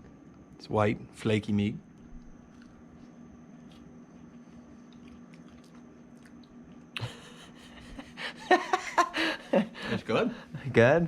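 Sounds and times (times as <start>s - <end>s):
steady low hum: 0.0s - 11.0s
person chewing: 3.6s - 6.9s.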